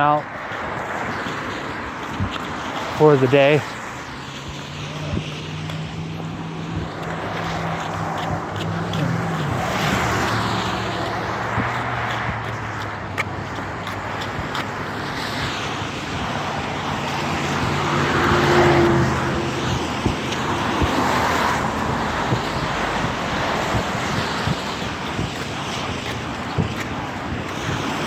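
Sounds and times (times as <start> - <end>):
vehicles passing: 0.0 - 28.0
low engine hum: 4.7 - 24.6.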